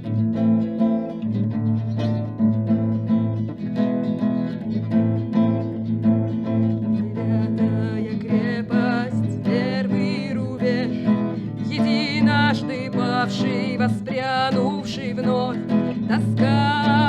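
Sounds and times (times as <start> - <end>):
acoustic guitar: 0.0 - 17.0
woman singing: 6.4 - 17.0.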